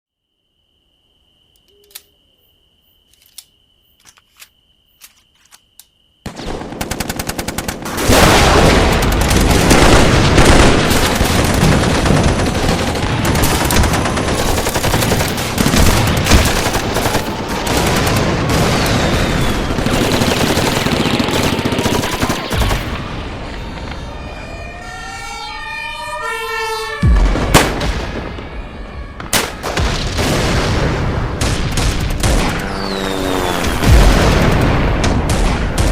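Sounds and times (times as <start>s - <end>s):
automatic gunfire: 6.5s - 23.1s
heavy blasts: 29.6s - 35.9s.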